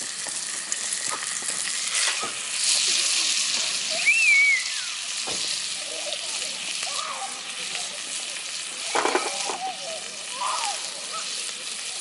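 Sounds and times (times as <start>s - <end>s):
food sizzling in a frying pan: 0.0s - 12.0s
high wavering whistle: 4.0s - 5.0s.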